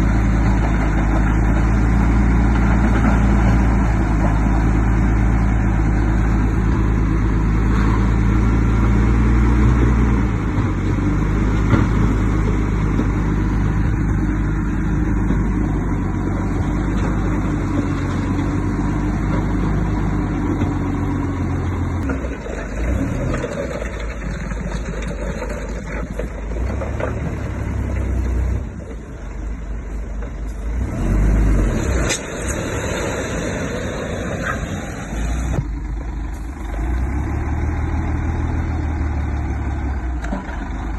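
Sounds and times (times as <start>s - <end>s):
engine knocks: 0.0s - 5.0s, 22.0s - 29.2s
bulldozer diesel engine: 0.0s - 40.9s.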